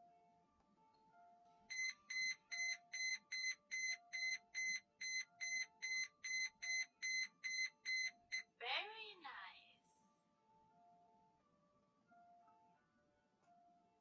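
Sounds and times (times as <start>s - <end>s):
soft background tune: 0.0s - 14.0s
electronic alarm beeping: 1.7s - 8.6s.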